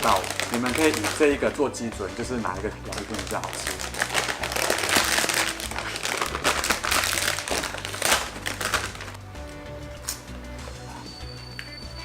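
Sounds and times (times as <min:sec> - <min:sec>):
chip bag crinkling: 0:00.0 - 0:01.6, 0:02.8 - 0:09.2.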